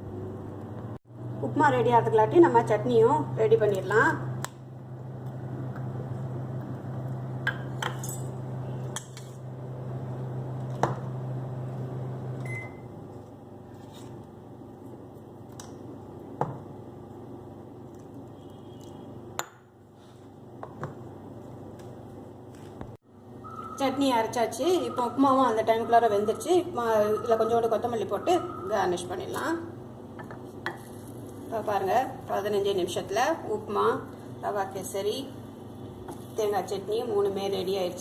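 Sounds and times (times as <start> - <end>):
microwave oven humming: 0.0 - 38.0
microwave beep: 12.4 - 13.0, 23.4 - 24.1.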